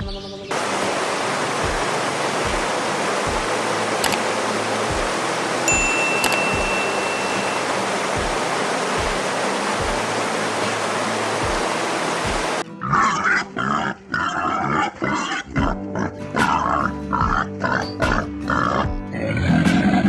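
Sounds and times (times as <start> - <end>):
steady rushing noise: 0.5 - 12.6
slow low beat: 1.6 - 3.7, 4.9 - 12.6
animal grunting and squealing: 12.8 - 16.9, 18.5 - 20.0.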